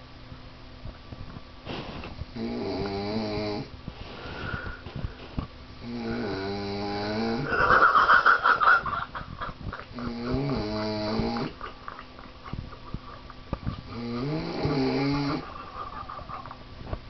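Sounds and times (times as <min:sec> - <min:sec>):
man snoring: 0:02.4 - 0:03.7, 0:05.8 - 0:07.5, 0:10.0 - 0:11.6, 0:13.9 - 0:15.5.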